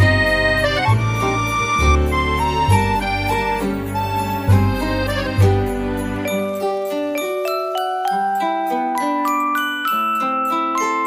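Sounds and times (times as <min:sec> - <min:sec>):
low bass line: 0:00.0 - 0:06.2
melody of struck notes: 0:00.0 - 0:11.0.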